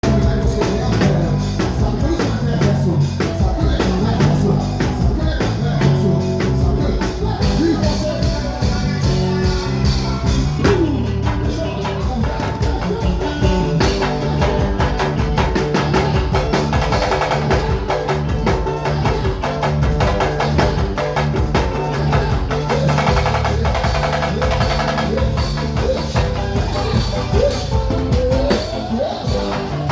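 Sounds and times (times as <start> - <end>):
loud music with drums: 0.0 - 29.9
person singing: 0.0 - 29.9.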